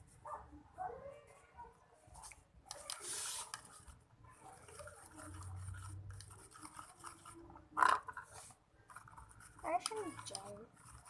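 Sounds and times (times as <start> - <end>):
slime rubbing and scraping: 2.2 - 11.0.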